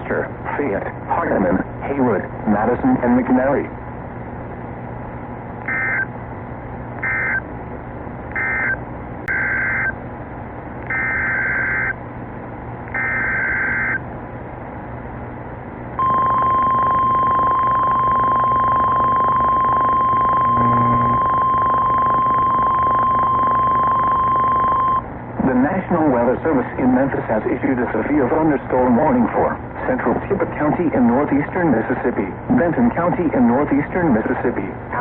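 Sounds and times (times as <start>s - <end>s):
steady alarm tone: 5.6s - 6.1s, 7.0s - 7.5s, 8.3s - 10.0s, 10.9s - 12.0s, 12.9s - 14.0s, 16.0s - 25.1s
buzzy digital data bursts: 20.4s - 21.9s.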